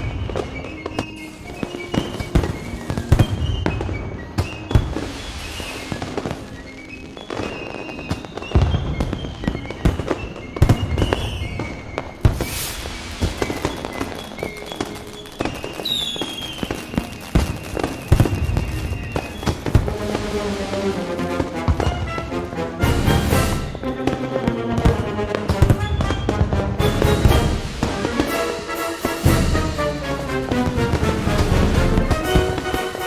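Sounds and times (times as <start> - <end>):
fireworks booms and bangs: 0.0 - 33.0
music playing: 19.4 - 33.0.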